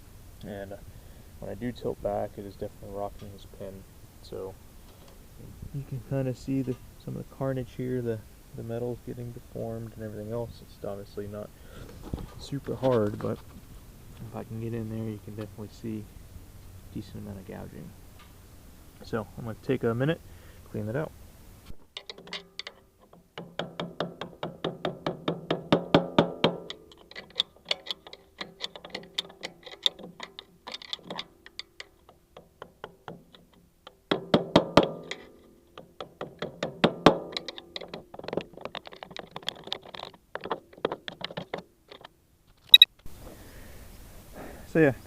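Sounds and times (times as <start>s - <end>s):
scraping and knocking dirt: 11.9s - 13.6s, 21.8s - 43.2s.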